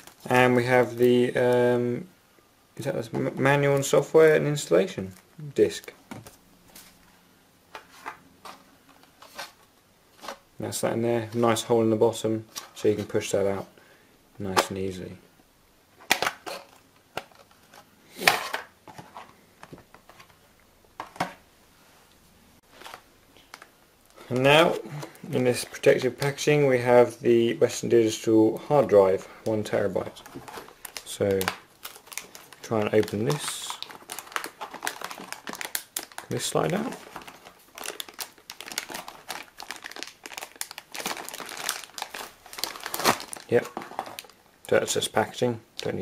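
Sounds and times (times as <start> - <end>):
packaging crinkling and rustling: 0.0 - 0.4, 22.6 - 26.5, 28.8 - 45.9
boxes being handled: 16.0 - 20.4, 29.6 - 44.3.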